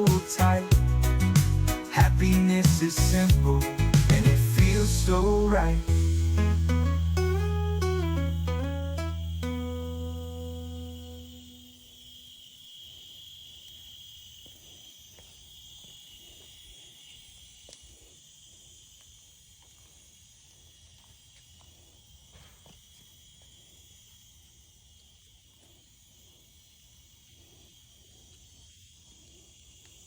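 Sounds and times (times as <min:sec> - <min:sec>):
insect chorus trilling: 0:00.0 - 0:30.0
faint ticks: 0:11.3 - 0:24.4, 0:25.0 - 0:30.0.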